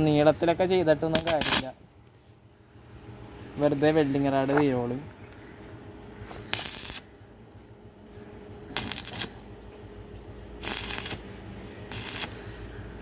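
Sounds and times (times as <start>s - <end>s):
welding arc crackling: 1.0s - 1.8s, 6.5s - 7.1s, 8.7s - 9.5s, 10.5s - 12.7s.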